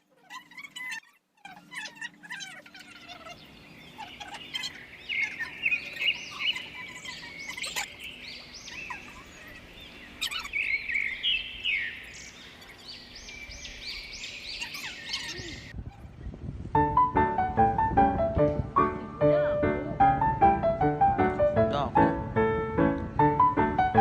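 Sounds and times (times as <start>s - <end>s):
birds chirping: 0.0s - 16.4s.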